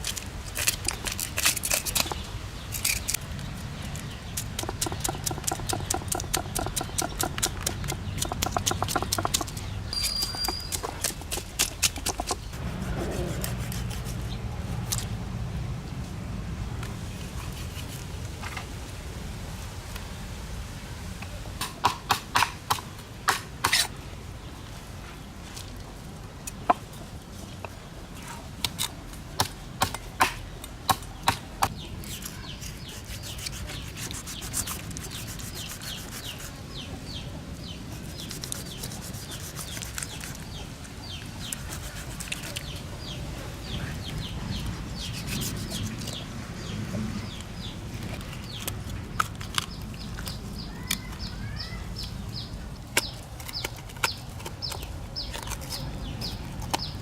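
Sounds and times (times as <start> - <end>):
birds chirping: 1.7 - 15.1, 30.4 - 57.0
steady scraping and rubbing: 4.5 - 15.1, 32.0 - 40.6, 41.2 - 43.1, 44.9 - 46.3.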